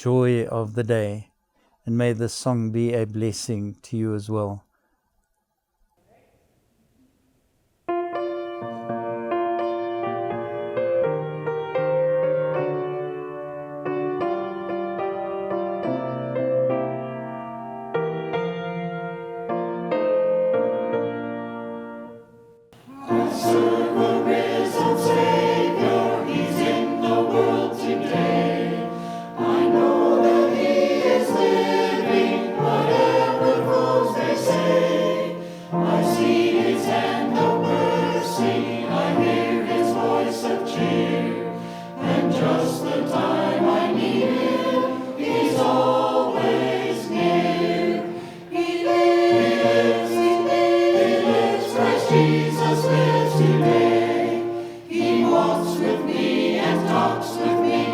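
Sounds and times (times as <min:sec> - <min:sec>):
choir singing a hymn: 0:22.8 - 0:57.9.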